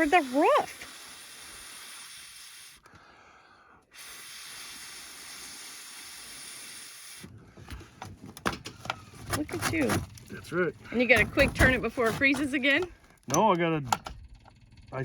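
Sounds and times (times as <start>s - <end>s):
gas jet hissing: 0.0s - 3.2s, 3.9s - 8.1s
clicks and knocks: 7.6s - 14.4s.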